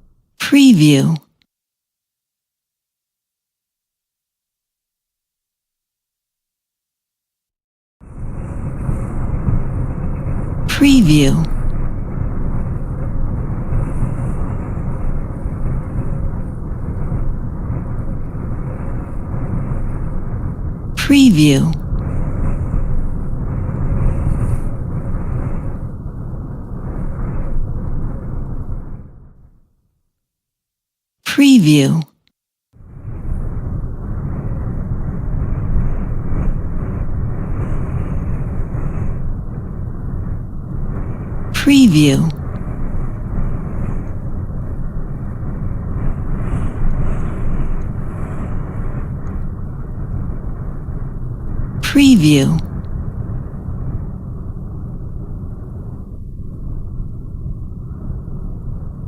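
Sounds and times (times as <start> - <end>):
strong wind rushing: 8.0 - 10.8, 11.4 - 21.1, 21.8 - 29.4, 32.8 - 41.6, 42.3 - 51.9, 52.6 - 59.0.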